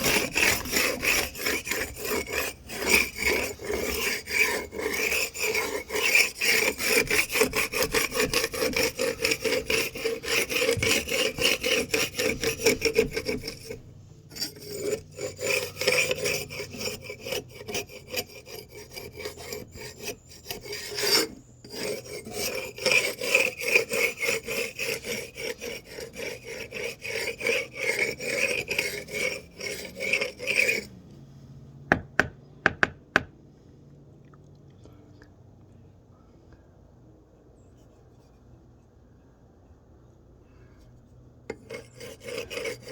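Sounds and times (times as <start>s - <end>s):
hand tool scraping wood: 0.0s - 30.9s, 41.5s - 42.9s.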